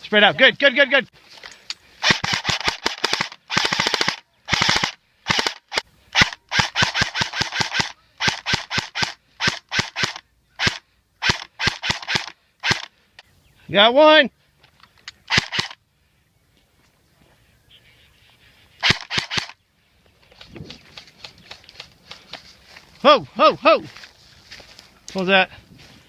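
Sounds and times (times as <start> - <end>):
airsoft guns firing bursts: 2.0 - 12.9, 15.3 - 15.8, 18.8 - 19.6.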